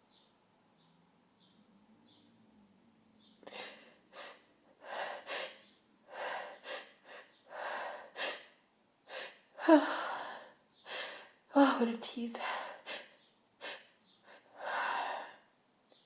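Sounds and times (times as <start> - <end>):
woman gasping in-breaths: 9.1 - 11.4.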